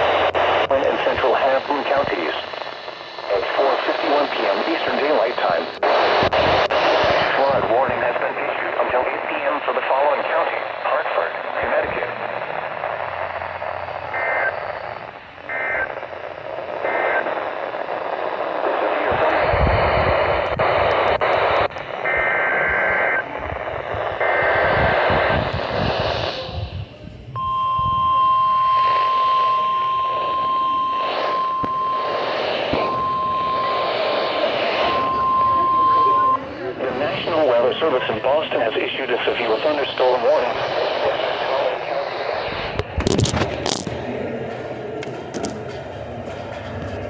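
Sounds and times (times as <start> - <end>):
radio static hiss: 0.0 - 44.2
steady alarm tone: 27.4 - 37.2.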